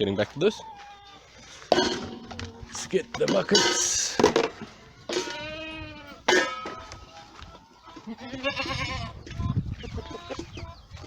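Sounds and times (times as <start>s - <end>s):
goats bleating: 5.1s - 6.4s, 7.8s - 10.5s.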